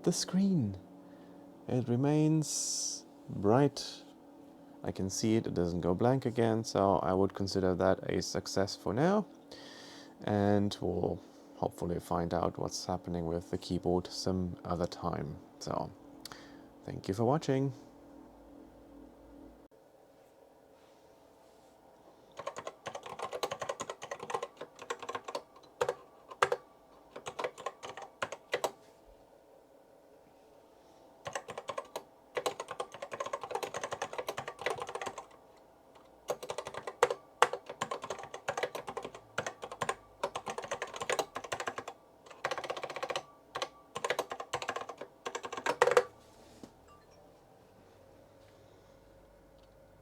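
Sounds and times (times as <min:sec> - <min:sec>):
typing on computer keyboard: 0:22.4 - 0:28.8, 0:31.3 - 0:35.4, 0:36.3 - 0:46.1.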